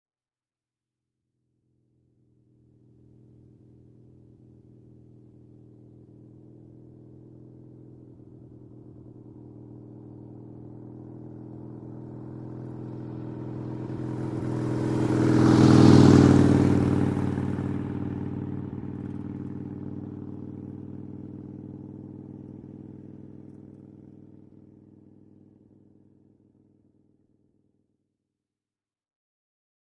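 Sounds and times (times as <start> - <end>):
motorcycle passing by: 7.2 - 24.6.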